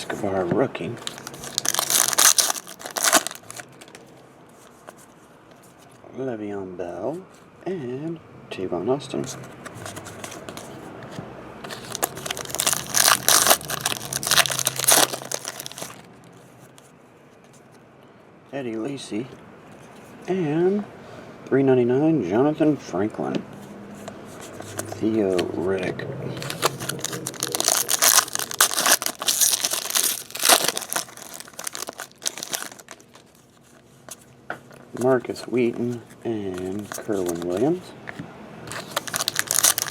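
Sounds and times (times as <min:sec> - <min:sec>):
foil wrapper crinkling and tearing: 0:01.0 - 0:04.0, 0:11.7 - 0:16.1, 0:26.4 - 0:33.5, 0:38.7 - 0:39.9.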